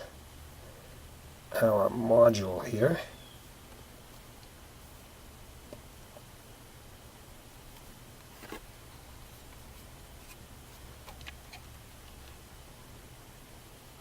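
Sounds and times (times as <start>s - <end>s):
low steady hum: 0.0s - 14.0s
light plastic scraping: 7.8s - 12.4s.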